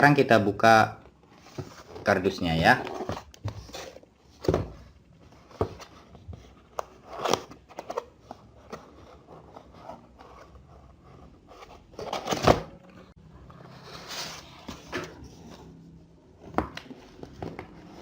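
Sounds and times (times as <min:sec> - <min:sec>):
cardboard flaps knocking and scraping: 0:04.4 - 0:05.8.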